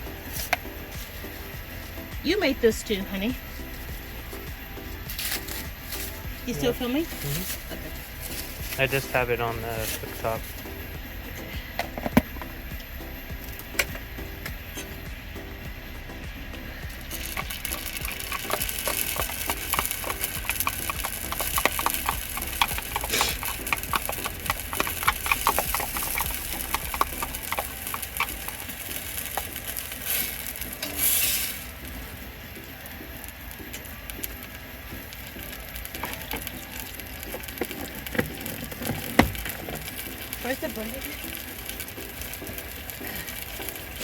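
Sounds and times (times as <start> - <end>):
campfire crackling and popping: 0.0 - 44.0
short hiss: 23.0 - 23.4, 29.9 - 31.9.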